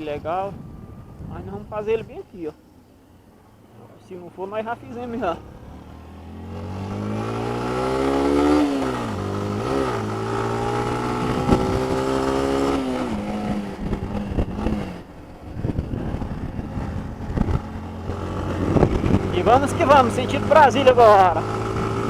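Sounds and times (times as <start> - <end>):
wind noise on microphone: 0.0 - 2.4, 8.1 - 20.2, 21.2 - 22.0
motorcycle engine accelerating: 5.0 - 22.0.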